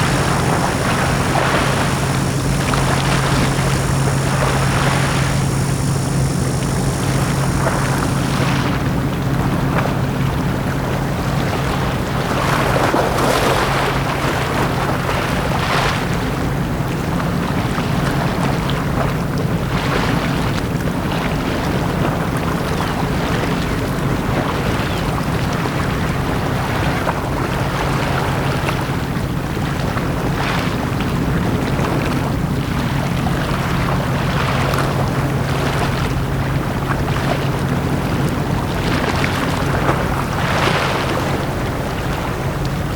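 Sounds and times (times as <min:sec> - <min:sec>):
low hum: 0:00.0 - 0:10.3
sea waves on a beach: 0:00.0 - 0:42.9.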